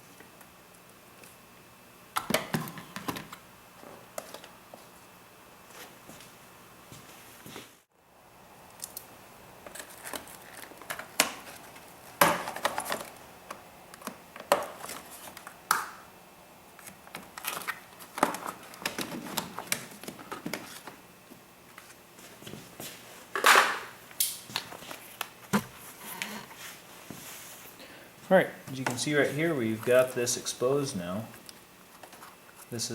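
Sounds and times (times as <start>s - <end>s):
plastic parts clicking and crinkling: 8.8s - 15.9s, 16.8s - 21.0s.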